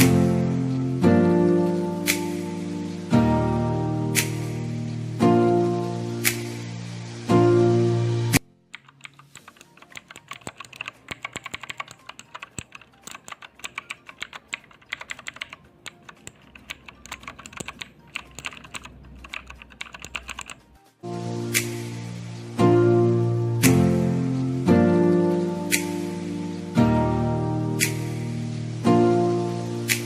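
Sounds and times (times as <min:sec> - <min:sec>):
background music: 0:00.0 - 0:30.0
mechanical keyboard typing: 0:08.7 - 0:20.7.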